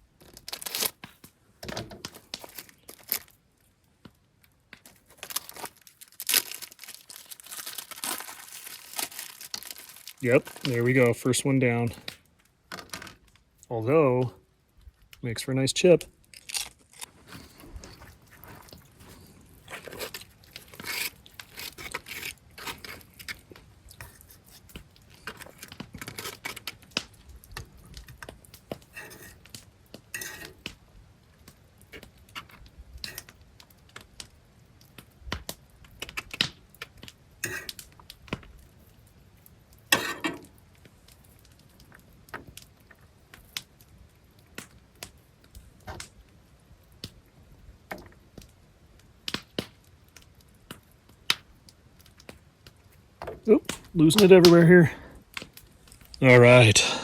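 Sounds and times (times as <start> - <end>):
food crunching: 4.8 - 10.8, 16.2 - 28.3
utensils and cookware clattering: 40.0 - 40.4.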